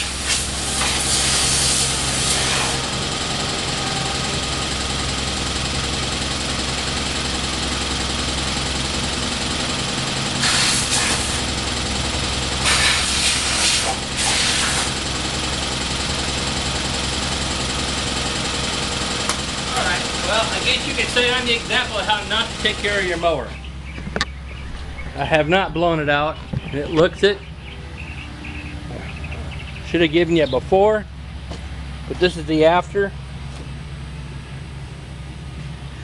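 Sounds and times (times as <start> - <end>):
hissing air blasts: 0.0 - 2.9, 10.4 - 11.5, 12.6 - 15.0
engine hum: 0.0 - 36.0.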